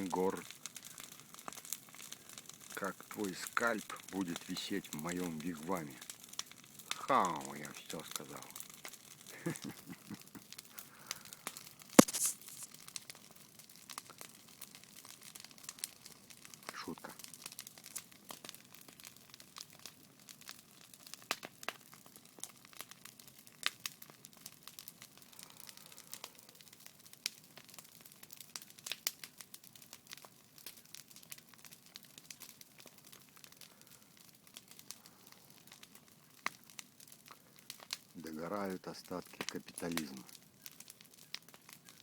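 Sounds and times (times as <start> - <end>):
campfire crackling and popping: 0.0 - 42.0
faint low hiss: 6.8 - 12.9.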